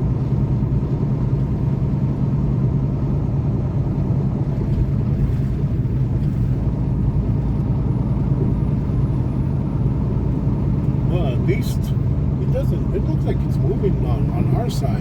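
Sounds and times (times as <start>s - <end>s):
diesel truck engine drone: 0.0s - 15.0s
road noise: 0.0s - 15.0s.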